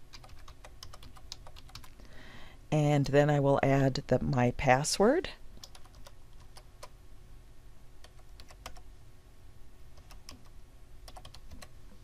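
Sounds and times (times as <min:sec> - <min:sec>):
keyboard typing: 0:00.1 - 0:02.0, 0:05.6 - 0:06.9, 0:08.0 - 0:08.8, 0:10.0 - 0:11.8.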